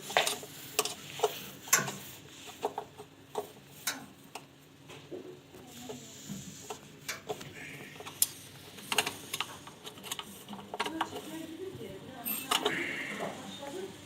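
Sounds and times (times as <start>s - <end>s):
hands clicking plastic parts: 7.1s - 11.4s.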